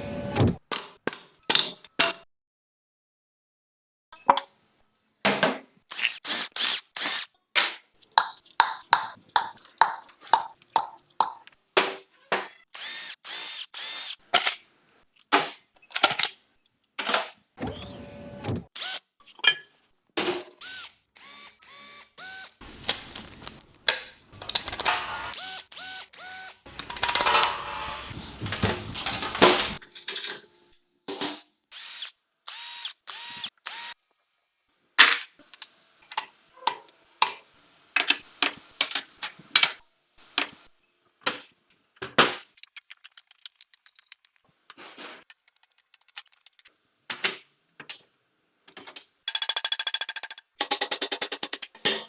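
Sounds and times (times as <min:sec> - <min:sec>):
impact driver bursts: 0:20.6 - 0:22.8, 0:24.4 - 0:29.8
ratchet clicking: 0:49.3 - 0:51.7.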